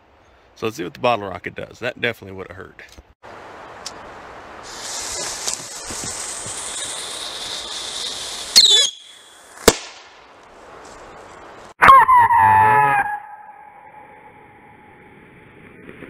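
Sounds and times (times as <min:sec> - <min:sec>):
fuse hissing: 0:04.6 - 0:09.6
screeching whistle falling in pitch: 0:08.6 - 0:09.2, 0:11.8 - 0:14.5.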